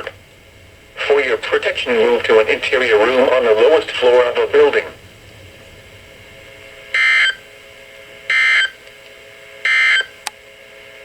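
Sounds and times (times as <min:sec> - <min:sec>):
warbling data bursts: 0:00.0 - 0:08.8
faint steady hum: 0:00.0 - 0:11.0.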